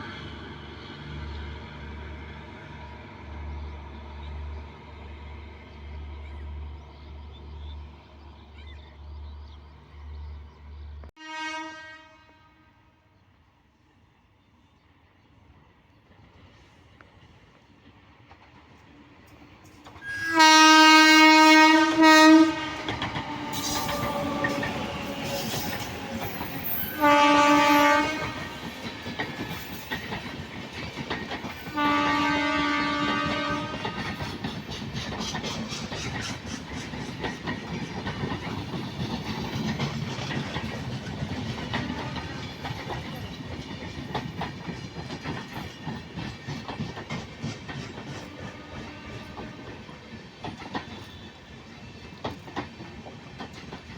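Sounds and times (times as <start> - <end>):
train horn blasts: 11.2 - 13.1, 20.0 - 28.9, 31.7 - 34.2, 41.8 - 42.6, 48.3 - 50.0
train wheels clickety-clack: 16.1 - 53.9.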